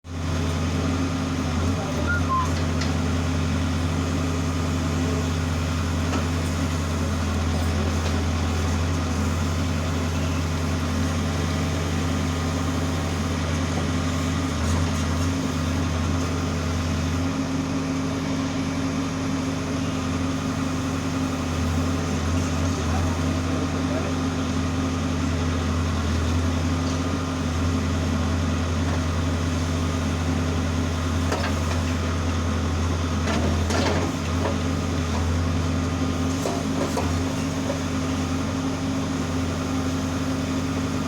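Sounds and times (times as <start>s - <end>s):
diesel engine running low: 0.0s - 41.0s.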